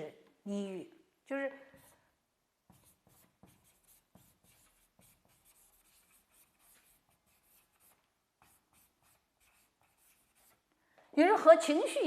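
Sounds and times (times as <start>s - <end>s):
pen scratching while writing: 2.7s - 10.6s.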